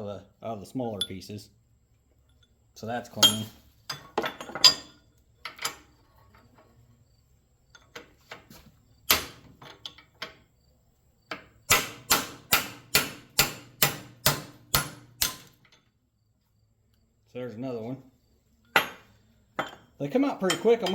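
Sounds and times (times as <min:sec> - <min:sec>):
hammer striking steel punch: 0:11.7 - 0:15.6.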